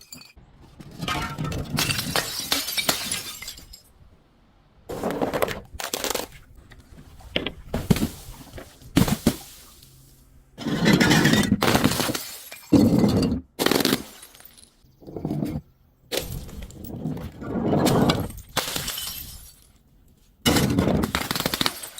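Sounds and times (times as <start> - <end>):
glass bottles breaking: 1.0 - 3.9, 10.8 - 14.8, 17.9 - 19.8, 20.5 - 21.9.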